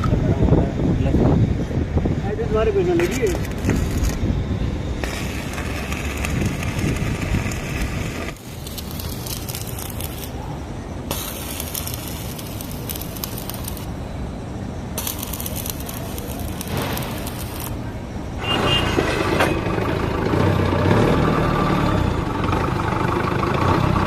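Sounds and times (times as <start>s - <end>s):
steady low rumble: 0.2s - 18.4s
arc welding crackling and hissing: 2.3s - 14.1s, 14.8s - 19.9s.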